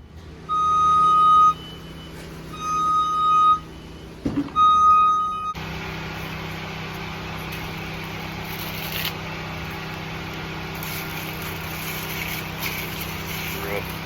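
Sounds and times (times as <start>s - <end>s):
engine humming: 0.0s - 14.0s.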